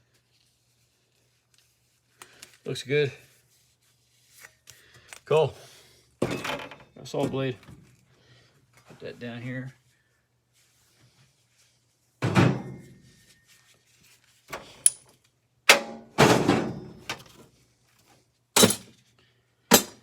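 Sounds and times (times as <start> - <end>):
saw parts clanking on hard surface: 18.6 - 18.9, 19.7 - 20.0.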